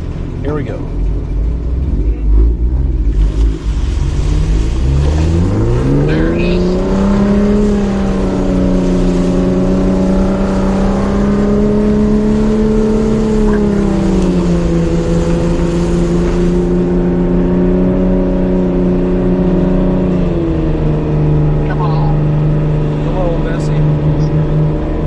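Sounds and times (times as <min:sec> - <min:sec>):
car engine running at high revs: 0:00.0 - 0:25.0.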